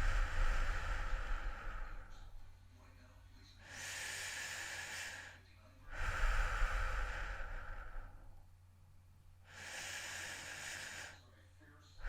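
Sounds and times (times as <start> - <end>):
person breathing heavily: 0.0 - 2.5, 3.6 - 8.4, 9.4 - 11.3.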